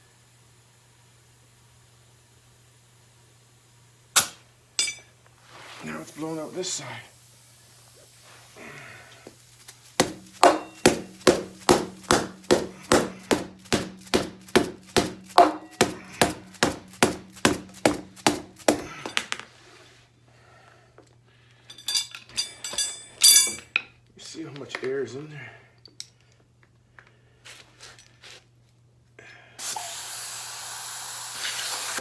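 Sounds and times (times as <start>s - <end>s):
hammer striking tire: 10.0s - 19.2s.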